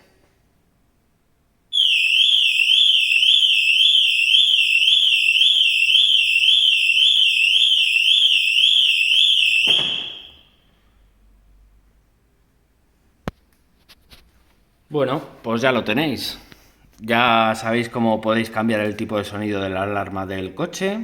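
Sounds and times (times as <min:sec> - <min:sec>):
car alarm siren warbling: 0:01.7 - 0:10.6.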